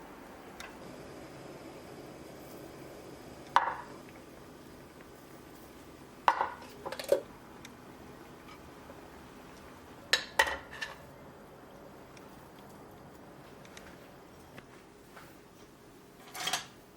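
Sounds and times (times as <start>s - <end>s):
dishes and cutlery clinking: 16.2s - 16.8s.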